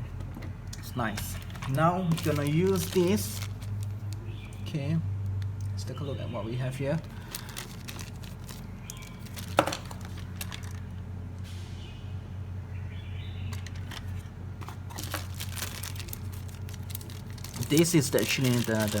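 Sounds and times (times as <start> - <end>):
small objects clicking and rustling: 1.2 - 4.6, 7.0 - 11.0, 13.5 - 19.0.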